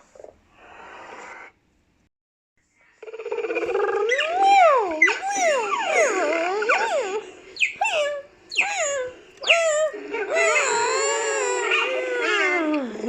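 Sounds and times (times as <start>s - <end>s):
whining cries: 3.3s - 13.0s.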